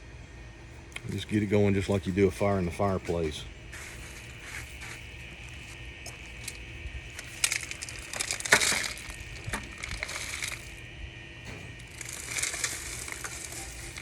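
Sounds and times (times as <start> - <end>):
sticks snapping and crackling: 3.8 - 10.8, 11.8 - 14.0.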